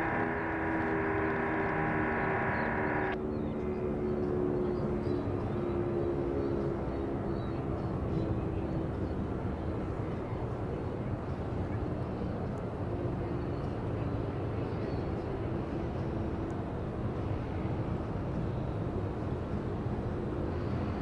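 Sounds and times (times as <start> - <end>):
faint low warning siren: 0.0 - 3.2
steady low rumbling: 0.0 - 3.2.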